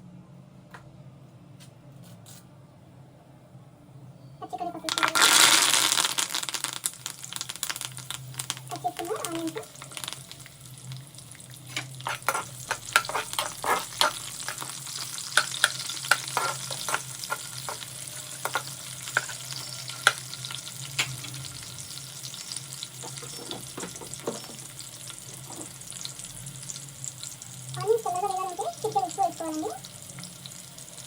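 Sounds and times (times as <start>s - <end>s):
onions sizzling in hot oil: 4.5s - 31.0s
spoon scraping a pan: 11.7s - 21.4s, 23.0s - 24.7s.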